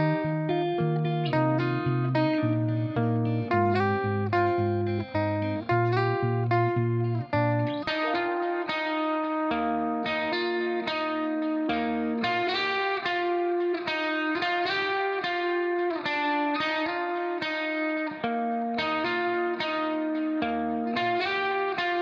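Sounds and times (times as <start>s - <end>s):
instrumental melody of sustained notes: 0.0s - 12.2s.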